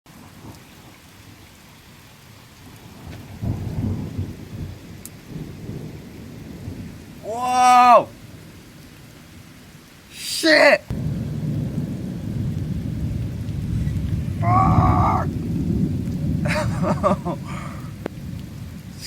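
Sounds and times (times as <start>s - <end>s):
steady rain: 0.1s - 19.0s
thunder rumbling: 2.6s - 8.8s, 10.9s - 19.0s
person's wordless cry: 7.2s - 8.1s, 10.2s - 10.9s, 14.4s - 15.3s, 16.5s - 17.9s.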